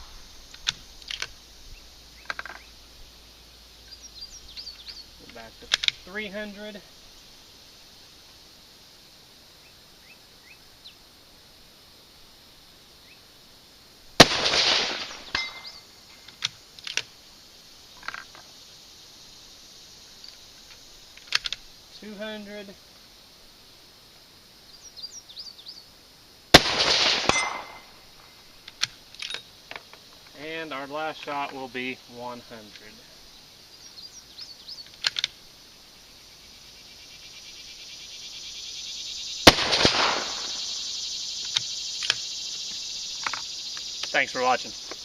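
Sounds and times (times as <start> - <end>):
high insect buzz: 0.0 - 45.0
quiet clicks: 0.5 - 1.4, 20.2 - 21.7, 34.8 - 35.4
high bird chirps: 3.8 - 5.2, 15.0 - 16.3
bullet hitting metal target: 14.2 - 15.8, 26.6 - 27.9
rifle shot with echo: 14.2 - 15.8, 26.5 - 28.0, 39.5 - 40.6.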